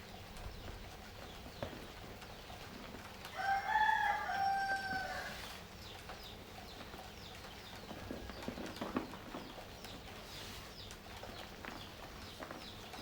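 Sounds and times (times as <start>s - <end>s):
rooster crowing: 3.3s - 5.4s.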